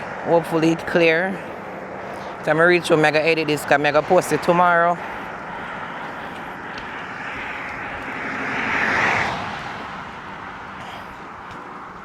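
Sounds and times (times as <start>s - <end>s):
vehicle passing by: 0.0s - 12.0s
wind noise on microphone: 3.5s - 12.0s.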